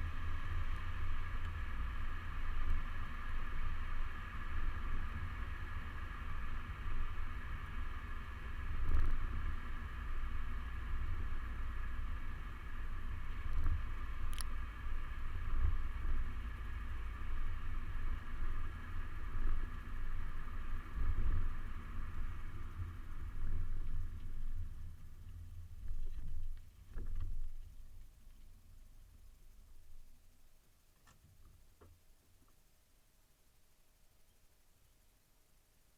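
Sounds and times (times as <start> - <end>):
car engine driving off-road: 0.0 - 27.8.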